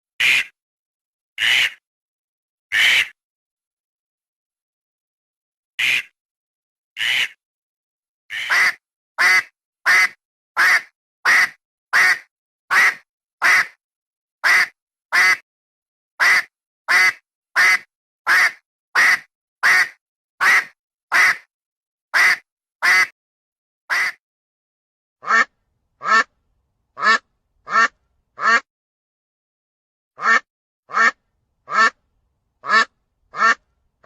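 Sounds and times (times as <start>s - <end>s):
duck quacking: 0.2s - 0.6s, 1.4s - 1.8s, 2.7s - 3.2s, 5.8s - 6.1s, 7.0s - 7.4s, 8.3s - 13.8s, 14.4s - 15.4s, 16.2s - 21.5s, 22.2s - 23.1s, 23.9s - 24.2s, 25.2s - 26.3s, 27.0s - 28.7s, 30.2s - 32.0s, 32.6s - 33.6s.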